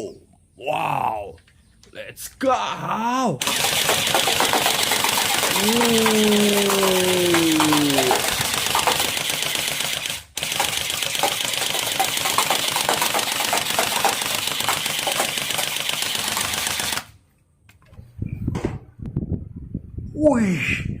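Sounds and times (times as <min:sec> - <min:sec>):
toy machine gun rattle: 0:03.4 - 0:17.2.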